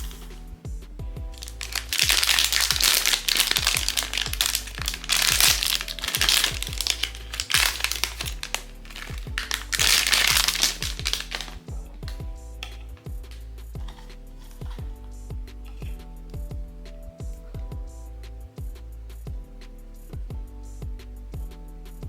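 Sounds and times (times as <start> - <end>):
plastic packaging crinkling: 0.0 - 0.3, 1.4 - 11.6, 13.8 - 14.8
background music with a beat: 0.0 - 22.0.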